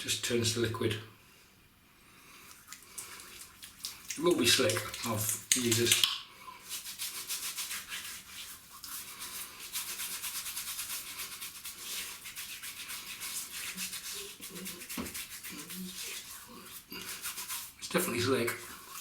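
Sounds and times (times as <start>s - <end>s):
hand rubbing stubble: 2.5s - 6.1s, 6.7s - 17.8s.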